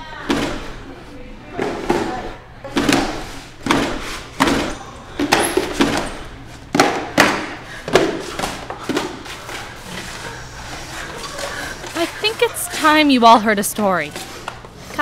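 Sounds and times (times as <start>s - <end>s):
heavy thuds in reverberant room: 0.1s - 0.9s, 1.5s - 9.8s.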